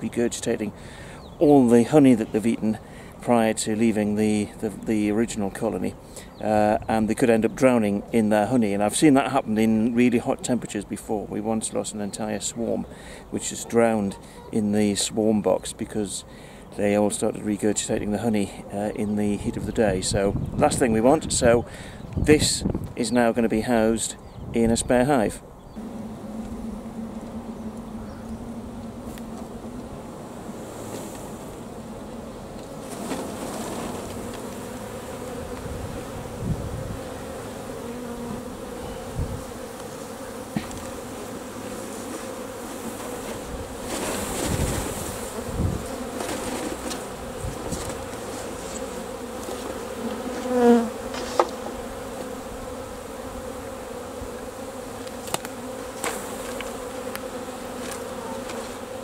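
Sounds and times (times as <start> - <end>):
bee swarm buzzing: 25.1 - 59.0
close bee buzz: 25.7 - 59.0.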